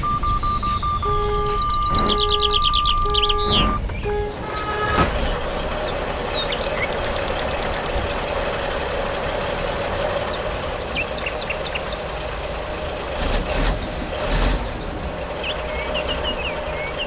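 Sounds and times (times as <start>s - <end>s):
birds chirping: 0.0s - 4.8s, 5.5s - 8.4s, 10.1s - 12.1s, 15.4s - 17.0s.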